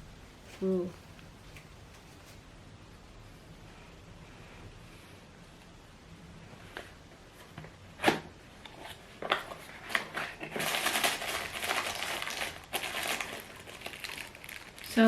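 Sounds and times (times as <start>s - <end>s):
plastic packaging crinkling: 8.8s - 15.0s.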